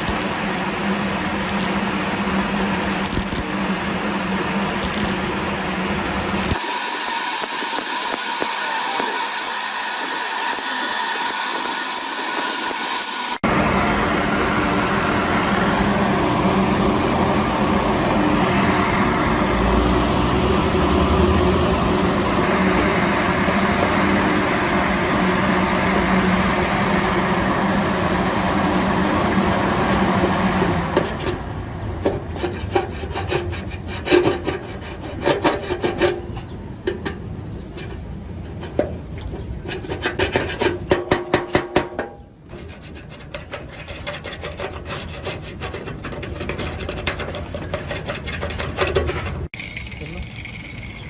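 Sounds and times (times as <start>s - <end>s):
steady mechanical hum: 0.0s - 51.0s
quick rasping rubbing strokes: 42.5s - 51.0s.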